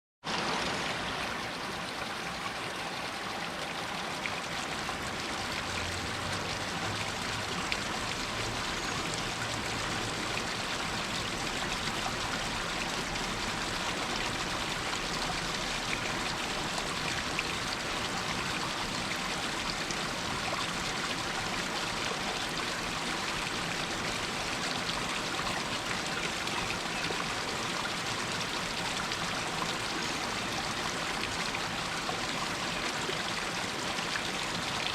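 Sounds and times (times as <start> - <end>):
water rushing down rocks: 0.3 - 34.9
water trickling over stones: 0.3 - 34.9.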